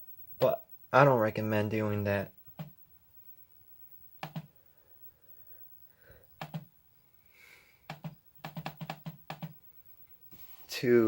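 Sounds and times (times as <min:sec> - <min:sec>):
laptop keys clicking: 0:04.2 - 0:04.5, 0:06.4 - 0:06.7, 0:07.9 - 0:09.6.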